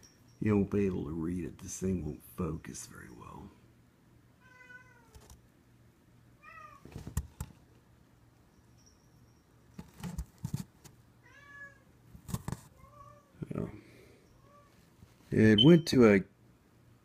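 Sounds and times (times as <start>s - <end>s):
cat meowing: 4.4s - 5.2s, 6.4s - 6.8s, 11.2s - 11.9s, 12.8s - 13.4s.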